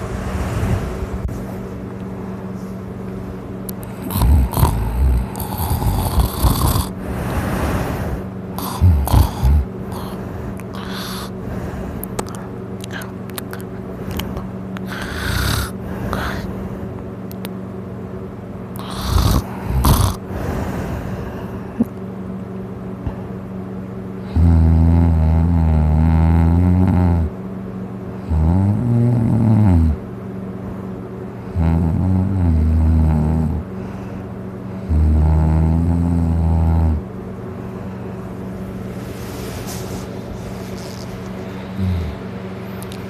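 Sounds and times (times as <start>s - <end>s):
person snoring loudly: 3.8s - 13.1s, 14.1s - 16.6s, 18.8s - 21.8s, 24.2s - 27.3s, 28.2s - 30.0s, 31.5s - 33.8s, 34.8s - 37.1s, 40.6s - 42.2s.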